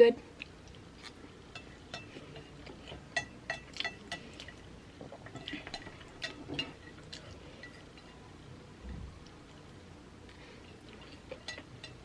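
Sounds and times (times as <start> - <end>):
cutlery clinking against plate: 1.5 - 4.6, 5.3 - 8.2, 11.1 - 12.0.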